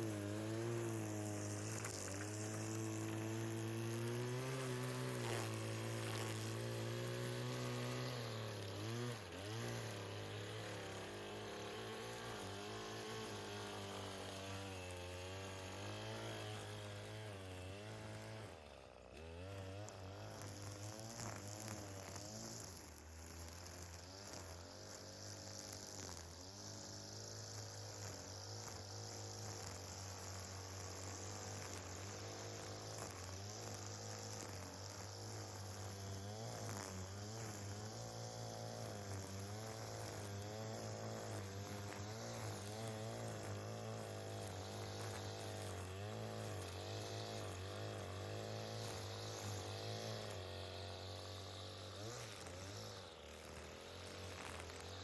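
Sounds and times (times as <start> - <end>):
lawn mower engine running: 0.0 - 55.0.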